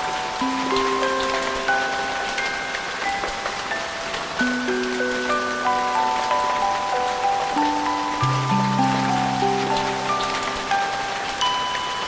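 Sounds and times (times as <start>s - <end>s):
rain pattering: 0.0s - 12.0s
slow calm instrumental music: 0.0s - 12.0s.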